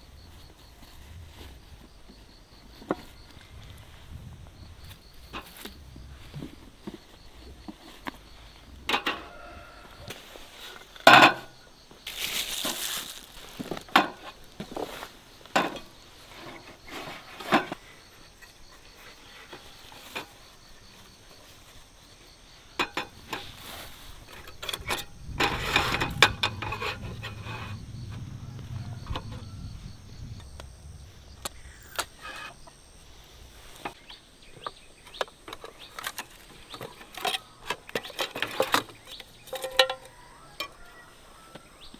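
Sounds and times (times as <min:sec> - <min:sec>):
rustling: 0:12.0 - 0:34.1.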